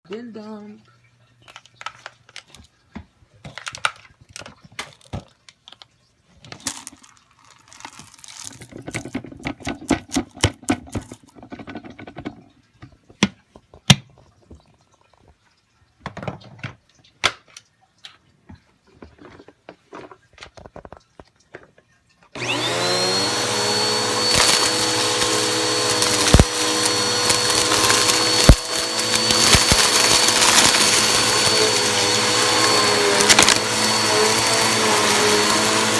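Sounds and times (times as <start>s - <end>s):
vacuum cleaner running: 22.4s - 35.9s.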